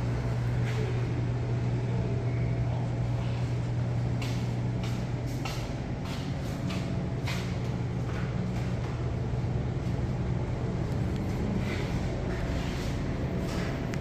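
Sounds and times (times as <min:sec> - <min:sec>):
freezer refrigeration unit humming: 0:00.0 - 0:14.0.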